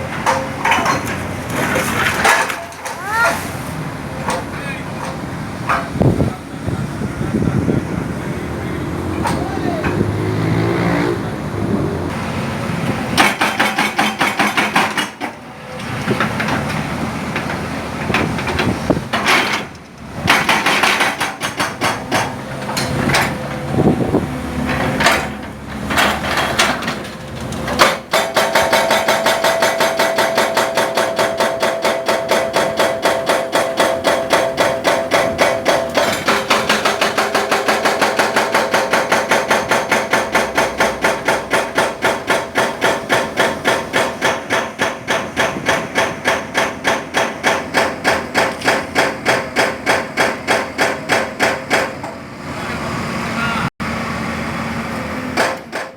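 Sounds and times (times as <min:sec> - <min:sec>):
hydraulic breaker hammering concrete: 0:12.8 - 0:52.2, 0:55.2 - 0:55.9.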